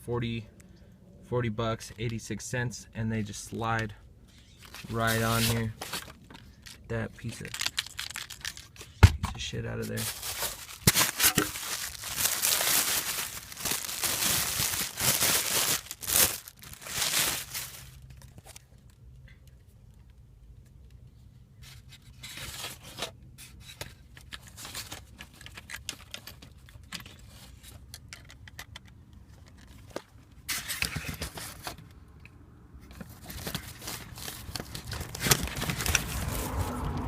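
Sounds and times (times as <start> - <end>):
hands scraping and clicking plastic: 25.1 - 30.1.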